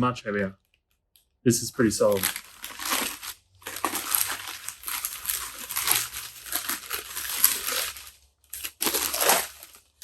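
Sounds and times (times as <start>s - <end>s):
packing material crinkling: 2.0s - 10.0s.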